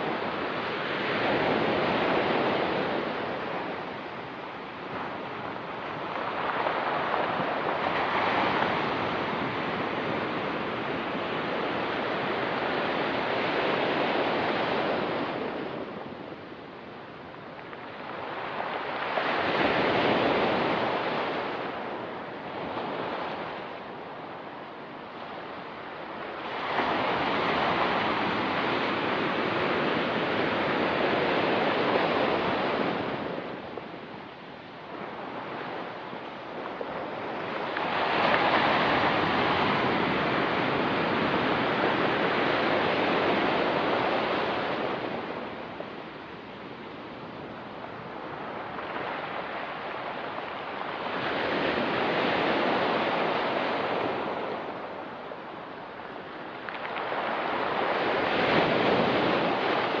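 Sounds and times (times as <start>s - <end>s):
waves breaking on rocky beach: 0.0s - 60.0s.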